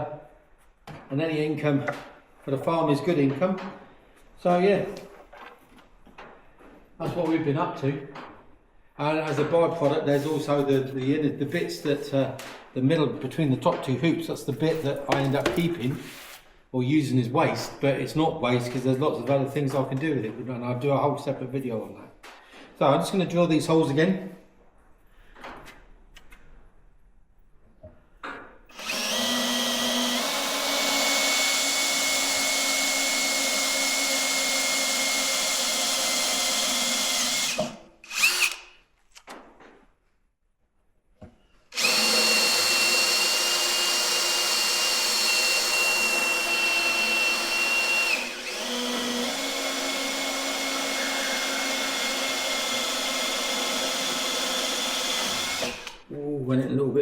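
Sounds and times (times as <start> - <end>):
electric drill boring wood: 28.7 - 38.8, 41.7 - 56.0.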